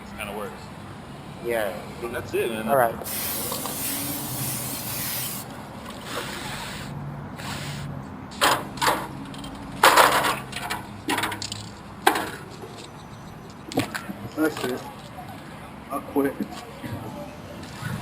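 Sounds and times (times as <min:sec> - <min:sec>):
aerosol spray can hissing: 0:03.0 - 0:05.5.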